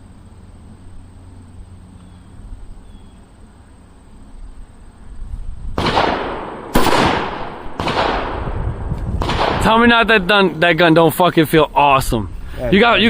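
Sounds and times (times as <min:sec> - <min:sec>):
low outdoor background: 0:00.0 - 0:13.0
rifle shots echoing: 0:05.8 - 0:10.3.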